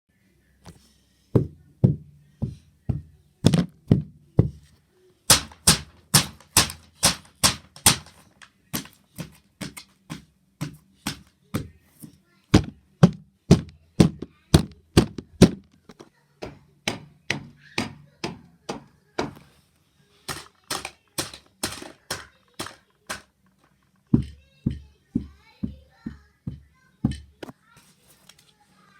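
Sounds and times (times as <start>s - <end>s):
sharp knocking: 5.3s - 8.2s, 12.6s - 15.7s.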